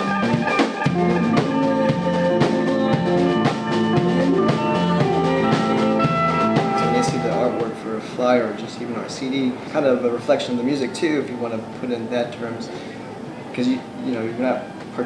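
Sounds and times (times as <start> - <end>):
drum kit steady beat: 0.0 - 8.6
band playing a song: 0.0 - 12.8.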